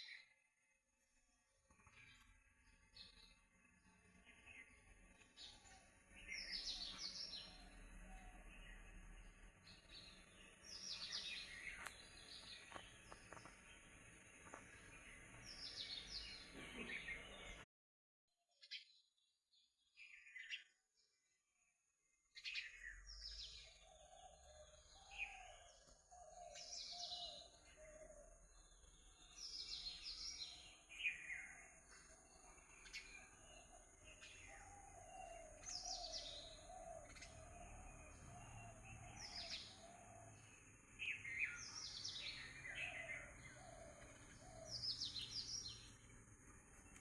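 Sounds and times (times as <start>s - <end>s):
birds chirping: 1.8s - 17.6s, 22.6s - 47.0s
repeating bird chatter: 34.2s - 46.1s.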